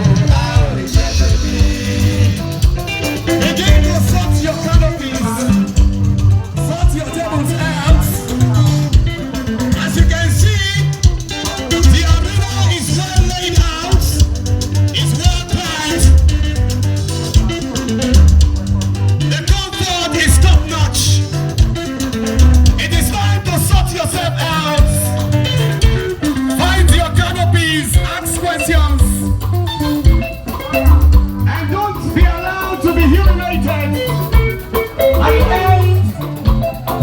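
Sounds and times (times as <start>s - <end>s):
person singing: 0.0s - 5.7s, 35.1s - 36.2s
guitar: 0.0s - 37.0s
heavy bass beat: 0.0s - 37.0s.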